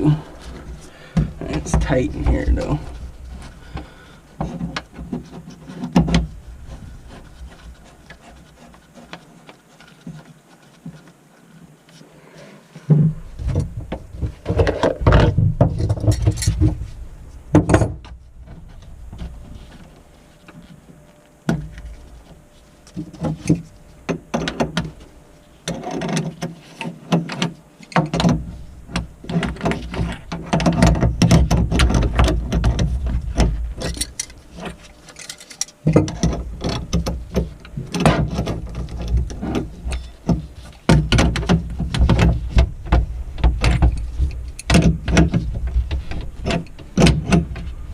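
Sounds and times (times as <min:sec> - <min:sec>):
low rumbling handling noise: 0:00.0 - 0:47.9
metal clicks and clanks of wrenches: 0:33.8 - 0:37.2.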